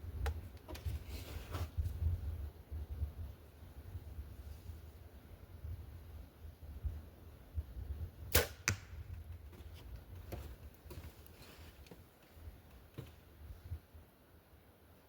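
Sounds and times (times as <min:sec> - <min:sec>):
arrow striking target: 0:08.3 - 0:09.1
bowstring snap: 0:08.3 - 0:09.1.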